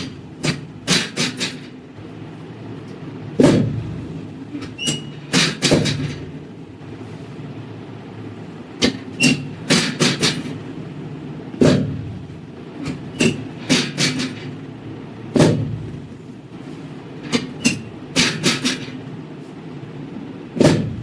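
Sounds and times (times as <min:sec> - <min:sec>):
steady low hum: 0:00.0 - 0:21.0
brief high squeak: 0:04.8 - 0:05.2.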